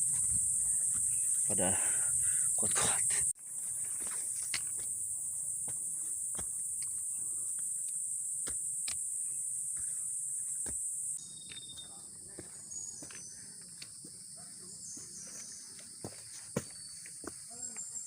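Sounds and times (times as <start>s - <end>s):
footsteps crunching on trail: 0.0s - 1.7s, 3.4s - 7.8s, 9.6s - 17.9s
insects high-pitched drone: 0.0s - 18.0s
quiet insect hiss: 0.0s - 18.0s
short high insect calls: 0.0s - 18.0s.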